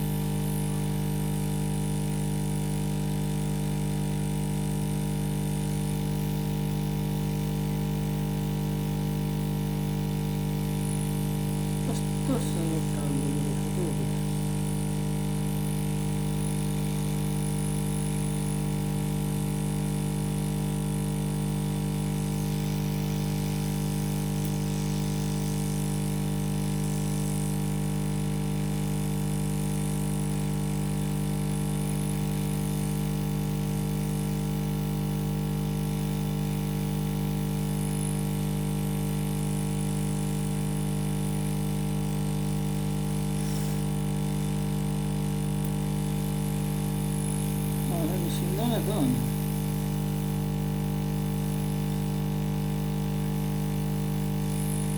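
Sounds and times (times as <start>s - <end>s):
hot air gun humming: 11.7s - 14.5s, 22.4s - 25.8s, 47.6s - 49.6s.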